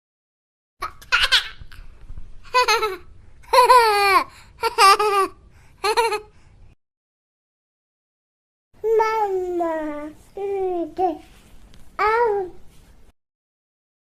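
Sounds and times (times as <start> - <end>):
baby laughing and babbling: 0.8 - 1.9, 2.5 - 6.3.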